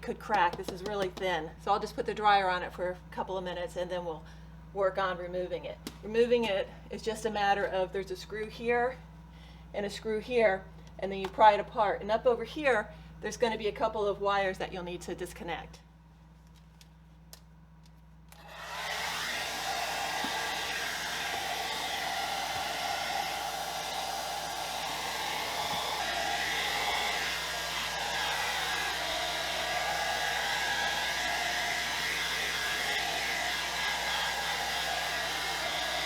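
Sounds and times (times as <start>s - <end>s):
hair dryer blowing: 18.4s - 36.0s.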